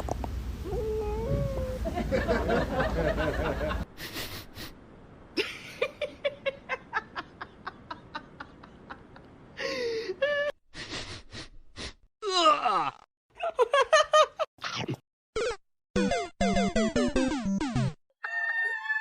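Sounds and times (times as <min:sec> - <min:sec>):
people laughing: 0:01.8 - 0:04.3.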